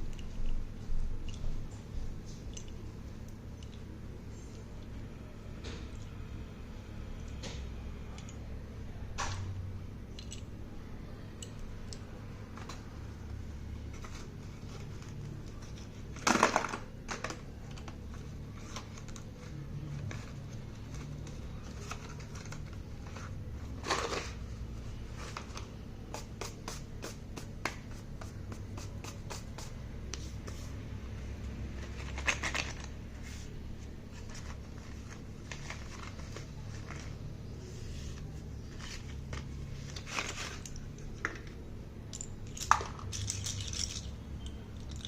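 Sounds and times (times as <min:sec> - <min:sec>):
pencils and packaging handled: 0:11.9 - 0:30.7, 0:31.4 - 0:45.0.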